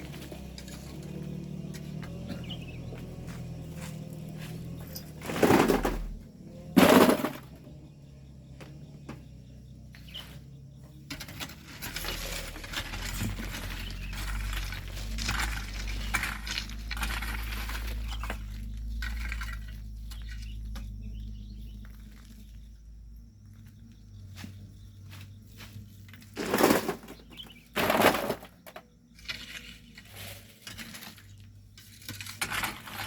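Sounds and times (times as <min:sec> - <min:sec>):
gravel clattering: 0:00.0 - 0:33.0
loud scrape: 0:05.2 - 0:06.1, 0:26.4 - 0:27.2.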